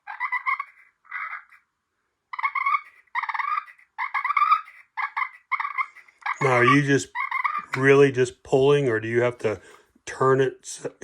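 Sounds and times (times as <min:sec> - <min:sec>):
turkey call purring rattles: 0:02.4 - 0:07.9.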